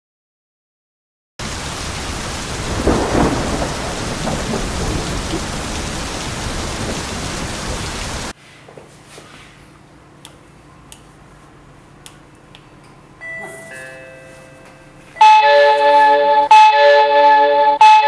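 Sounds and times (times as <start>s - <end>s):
heavy rain: 1.4s - 8.3s
thunder rumble: 1.4s - 8.3s.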